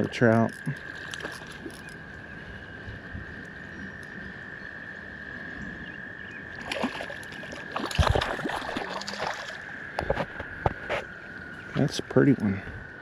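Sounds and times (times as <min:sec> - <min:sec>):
fish splashing in water: 0:06.6 - 0:09.7.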